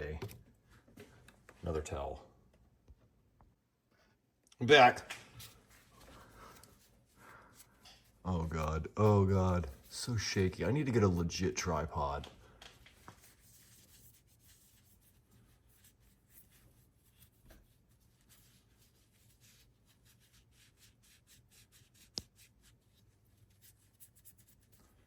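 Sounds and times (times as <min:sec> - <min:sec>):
cloth rubbing: 0:13.0 - 0:25.0.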